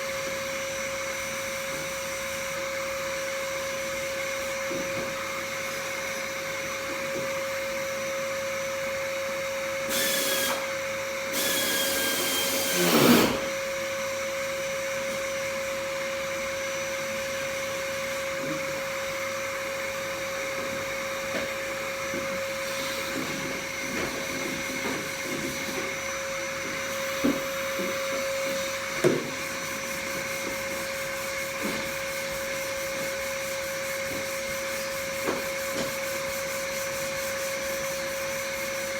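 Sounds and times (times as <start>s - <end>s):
electric sander whining: 11.3s - 13.6s.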